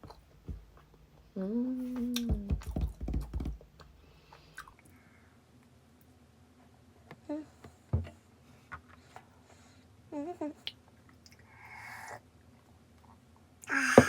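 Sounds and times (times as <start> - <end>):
person humming mmm: 1.4 - 2.7, 13.7 - 14.0.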